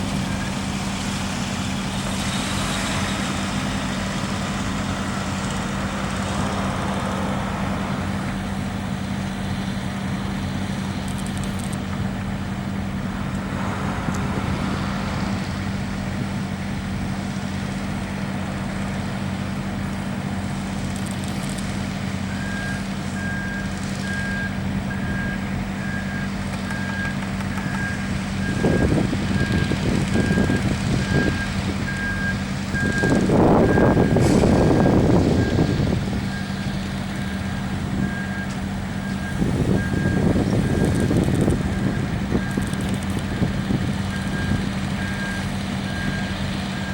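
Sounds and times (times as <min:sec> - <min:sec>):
diesel truck engine running: 0:00.0 - 0:46.9
reversing alarm beeping: 0:22.3 - 0:46.9.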